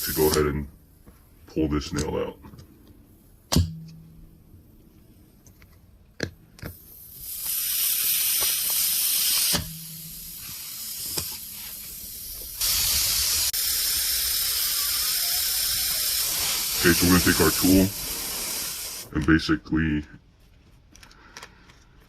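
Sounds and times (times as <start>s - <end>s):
air hissing from tire: 0.0s - 0.5s, 6.6s - 19.1s.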